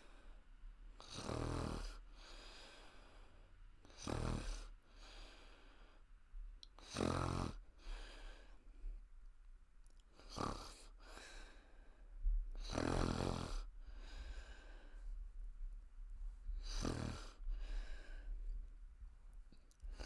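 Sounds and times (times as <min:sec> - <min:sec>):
woman snoring: 0:01.0 - 0:02.0, 0:03.9 - 0:04.7, 0:06.8 - 0:07.6, 0:10.2 - 0:11.0, 0:12.6 - 0:13.7, 0:16.6 - 0:17.4
breathy breaths: 0:02.0 - 0:03.6, 0:04.7 - 0:06.2, 0:07.7 - 0:09.0, 0:10.2 - 0:12.8, 0:13.6 - 0:15.4, 0:16.5 - 0:18.6.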